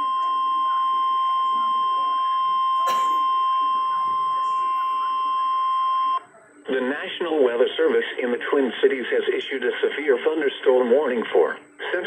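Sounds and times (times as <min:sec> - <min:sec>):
steady alarm tone from radio speaker: 0:00.0 - 0:06.2.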